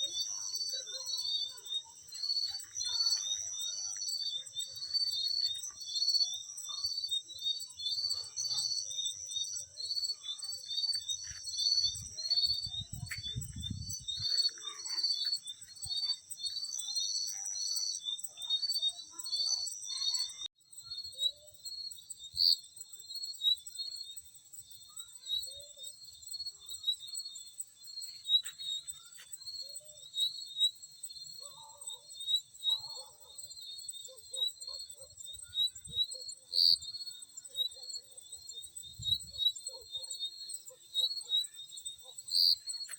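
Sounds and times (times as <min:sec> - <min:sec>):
crickets chirping: 0:00.0 - 0:42.9
high-pitched insect trill: 0:00.0 - 0:42.9.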